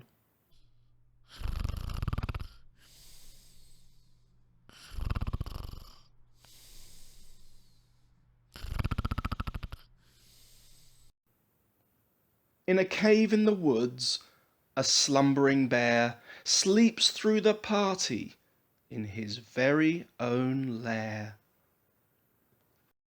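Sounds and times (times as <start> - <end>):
person snoring: 1.3 - 4.0, 4.7 - 7.8, 8.5 - 11.1.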